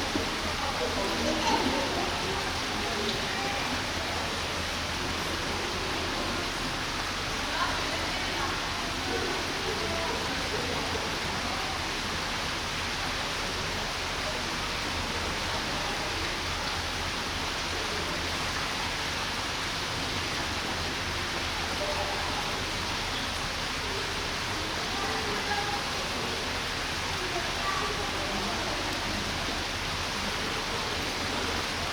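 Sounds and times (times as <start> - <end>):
distant voices murmuring: 0.0 - 12.3.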